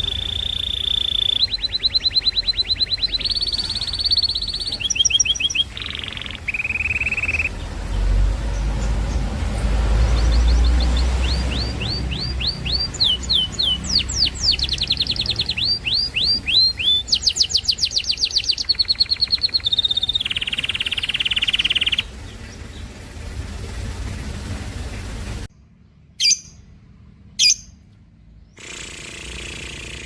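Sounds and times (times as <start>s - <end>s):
pet bird whistling and trilling: 0.0s - 7.5s, 11.2s - 22.1s, 26.2s - 26.6s, 27.4s - 27.8s.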